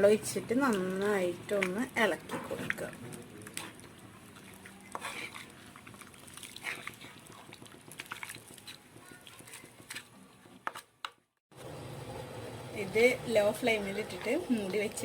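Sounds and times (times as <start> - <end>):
spoon stirring in a pot: 0.6 - 11.3.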